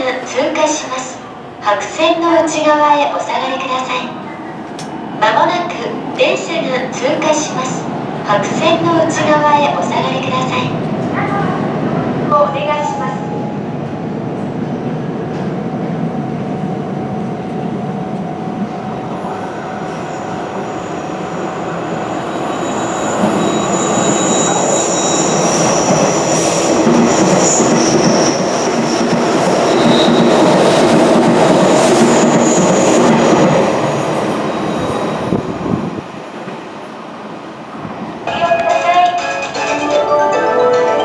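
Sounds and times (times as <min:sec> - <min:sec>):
electric train rumble: 0:12.9 - 0:41.0
high-pitched wheel squeal: 0:18.9 - 0:30.5, 0:34.3 - 0:35.8.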